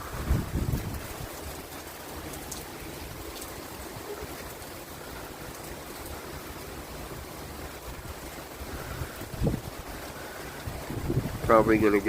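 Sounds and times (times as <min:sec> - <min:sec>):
gusty wind hissing: 0:00.0 - 0:01.7, 0:07.9 - 0:12.0
wind buffeting microphone: 0:00.0 - 0:04.1, 0:07.6 - 0:12.0.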